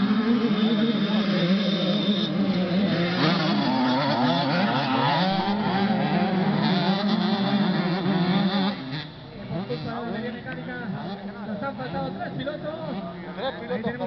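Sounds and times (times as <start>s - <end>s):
motocross bikes revving: 0.0s - 14.0s.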